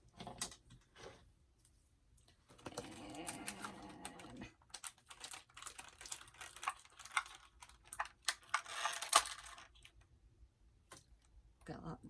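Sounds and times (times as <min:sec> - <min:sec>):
plastic wrapping crinkling: 0:02.6 - 0:10.0.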